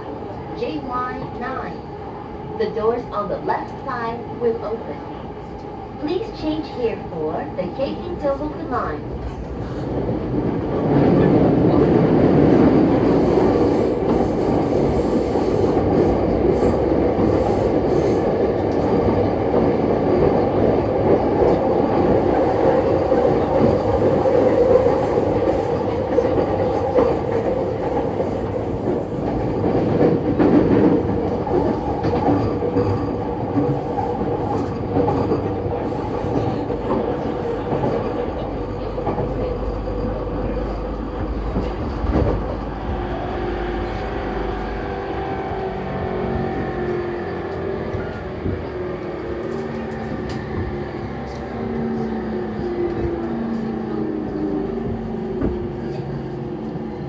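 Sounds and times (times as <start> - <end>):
train wheels on rail: 0.0 - 57.0
rail-joint clicks: 47.5 - 52.1.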